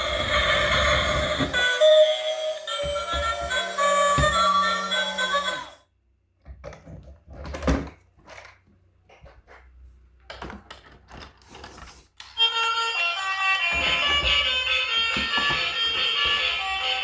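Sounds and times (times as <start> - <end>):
background music: 0.0 - 5.8.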